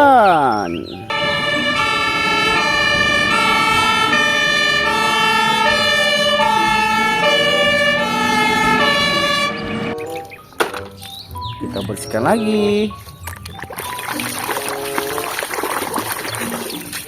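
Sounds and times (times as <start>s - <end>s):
two-tone fire engine siren: 1.1s - 10.2s.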